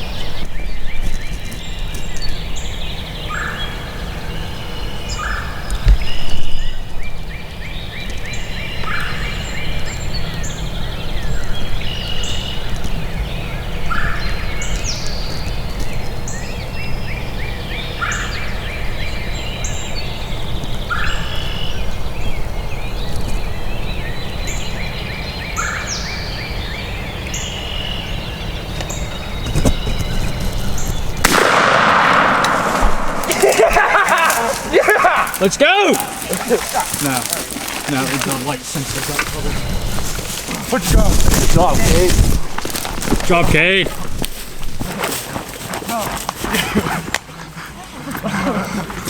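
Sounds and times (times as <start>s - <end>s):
bird calls: 0.0s - 49.0s
turkeys gobbling: 31.3s - 41.1s.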